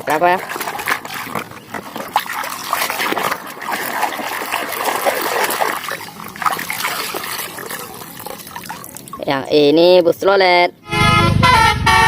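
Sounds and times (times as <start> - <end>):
water splashing and trickling: 0.0 - 9.9.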